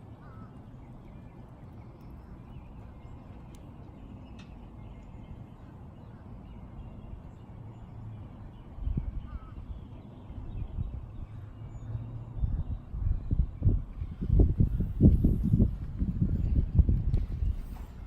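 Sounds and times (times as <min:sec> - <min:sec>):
light clicks: 0:03.3 - 0:03.7.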